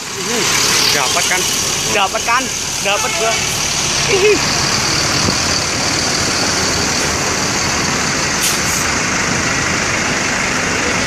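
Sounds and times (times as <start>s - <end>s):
heavy traffic engine and tyre noise: 0.0s - 11.0s.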